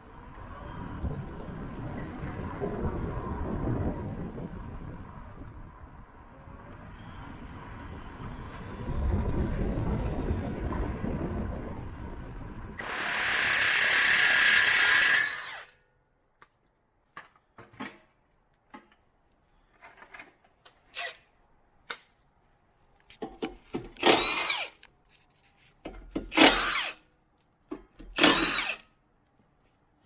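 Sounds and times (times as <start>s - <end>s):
loud steady noise: 12.8s - 15.6s
power tool motor whine: 12.8s - 15.8s, 24.0s - 24.8s, 26.4s - 27.0s, 28.2s - 28.8s.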